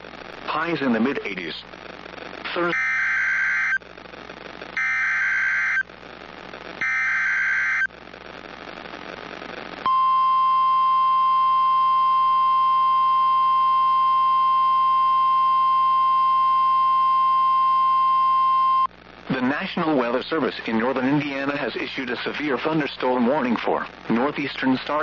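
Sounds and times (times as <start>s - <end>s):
radio hiss: 0.0s - 9.9s, 18.6s - 25.0s
digital data bursts: 2.5s - 3.8s, 4.8s - 5.9s, 6.8s - 7.9s
steady warning alarm tone: 2.7s - 3.8s, 4.8s - 5.8s, 6.8s - 7.9s.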